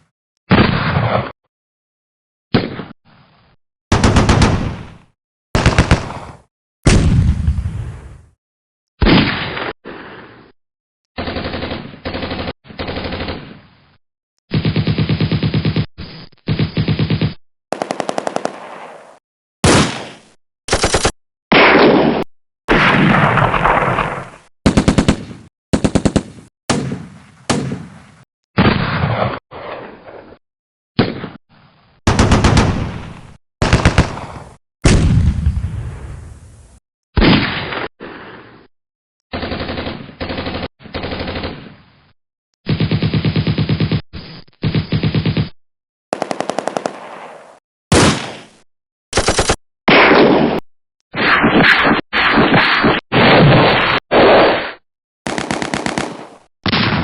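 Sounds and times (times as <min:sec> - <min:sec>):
single gunshots: 0:03.9 - 0:08.1, 0:09.0 - 0:09.7, 0:19.6 - 0:25.5, 0:37.2 - 0:37.9, 0:46.2 - 0:48.6, 0:49.2 - 0:50.6, 0:51.2 - 0:57.0
loud single gunshot: 0:19.6 - 0:20.2, 0:47.9 - 0:48.5
machine-gun bursts: 0:20.7 - 0:21.1, 0:49.2 - 0:49.6, 0:55.3 - 0:56.4
automatic machine-gun fire: 0:20.7 - 0:21.8, 0:32.1 - 0:33.0, 0:49.1 - 0:50.3, 0:55.2 - 0:57.0.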